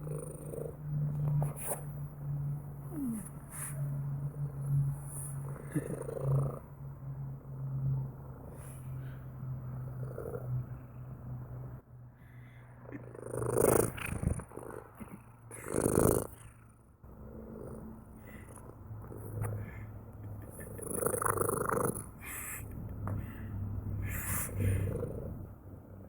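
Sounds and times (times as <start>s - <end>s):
cat purring: 0.0s - 2.0s, 2.6s - 6.8s, 9.8s - 11.2s, 12.8s - 26.0s.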